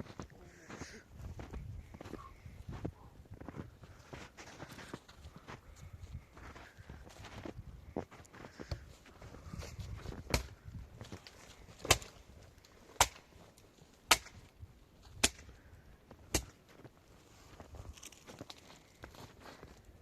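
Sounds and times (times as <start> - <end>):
axe chopping wood: 10.3 - 10.5, 11.8 - 12.2, 12.9 - 13.3, 14.1 - 14.4, 15.2 - 15.5, 16.3 - 16.6.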